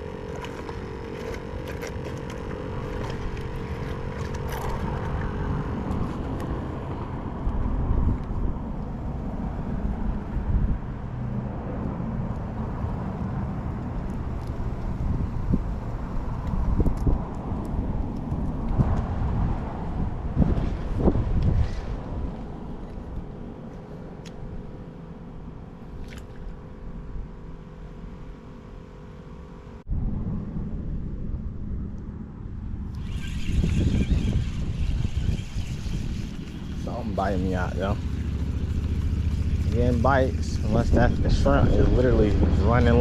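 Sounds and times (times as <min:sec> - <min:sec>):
faint steady hum: 0:00.0 - 0:10.8
road traffic rumble: 0:00.0 - 0:43.0.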